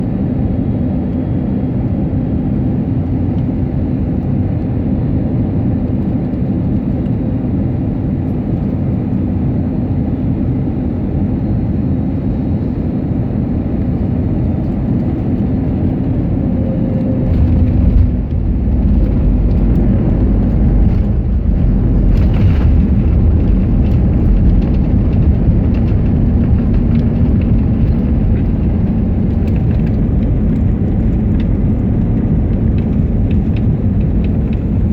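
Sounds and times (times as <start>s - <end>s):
deep rumble of wheels rolling: 0.0s - 34.9s
engine hum: 0.0s - 34.9s
airflow rushing: 15.8s - 25.4s.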